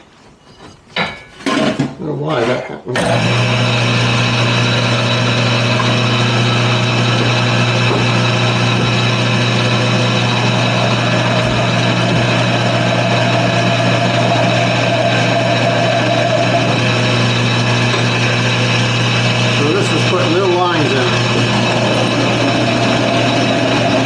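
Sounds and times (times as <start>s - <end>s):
wood lathe humming: 3.0s - 24.0s
texturing tool on spinning wood: 3.2s - 24.0s.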